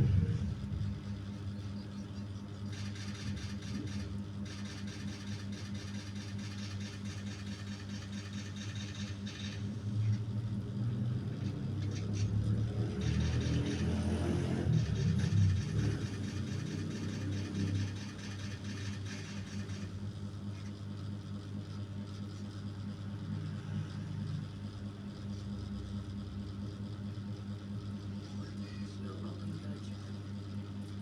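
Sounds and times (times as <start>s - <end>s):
motorcycle engine revving: 0.0s - 1.2s, 10.8s - 19.4s.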